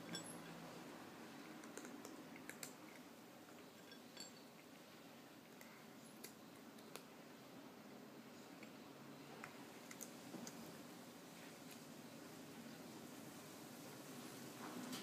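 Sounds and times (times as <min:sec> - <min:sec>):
kitten eating from a dish: 0:00.0 - 0:07.3, 0:08.3 - 0:11.9
low hiss: 0:00.0 - 0:15.0.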